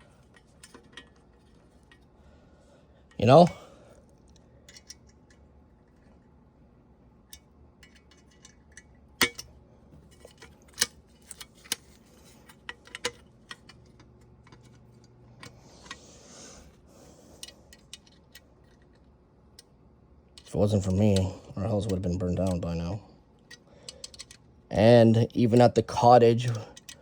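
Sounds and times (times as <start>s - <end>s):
small motor parts clicking and clinking: 4.2s - 6.2s, 7.3s - 16.0s, 17.4s - 19.7s, 23.4s - 24.5s, 26.4s - 27.0s.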